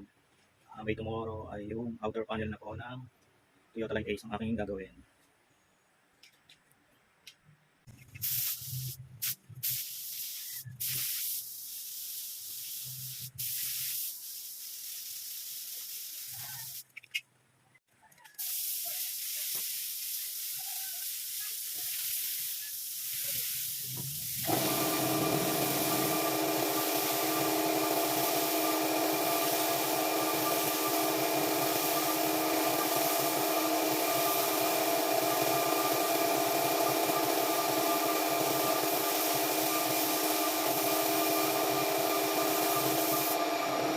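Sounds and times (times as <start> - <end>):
hissing workshop tool: 8.2 - 16.9, 18.4 - 43.9
machine whine: 24.4 - 43.9.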